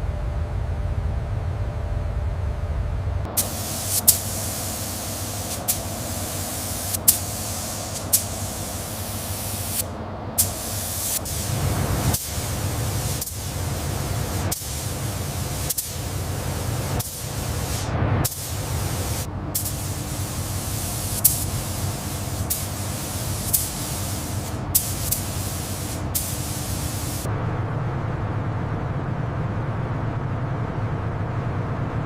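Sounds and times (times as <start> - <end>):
low hum: 0.0 - 32.0
spray gun hissing: 3.3 - 27.3.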